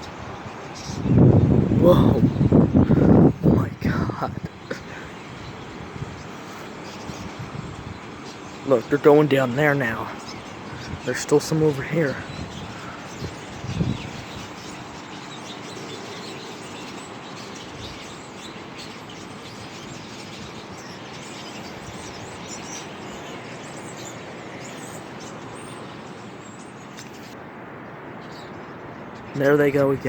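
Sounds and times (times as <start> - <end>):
flock of small birds chirping: 0.0 - 30.0.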